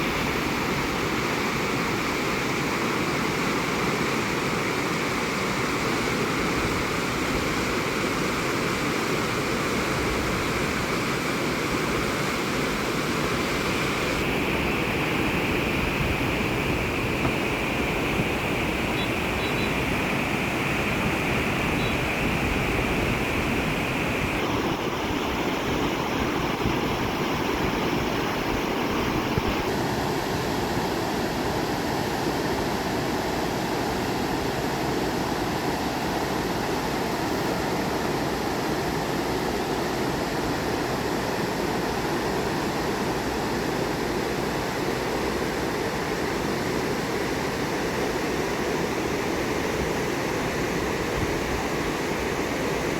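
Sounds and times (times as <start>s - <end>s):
stream rushing: 0.0s - 52.9s
faint high hiss: 13.4s - 29.9s.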